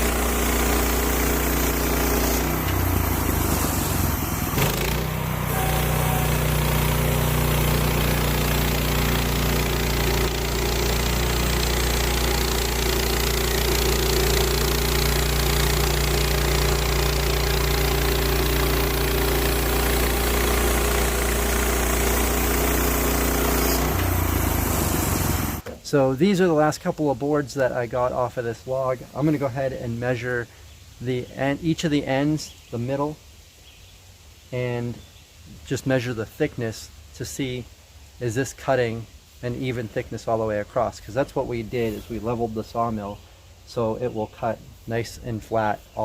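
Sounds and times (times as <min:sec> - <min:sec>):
bandsaw sawmill engine running: 0:00.0 - 0:25.8.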